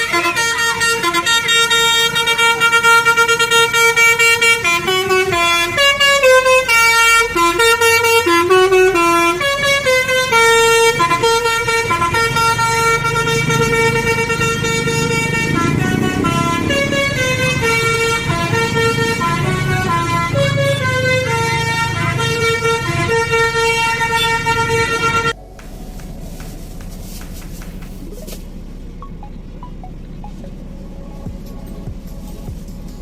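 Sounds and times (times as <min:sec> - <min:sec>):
multi-tone bus air horn tune: 0:00.0 - 0:28.5
low rumble: 0:09.0 - 0:33.0.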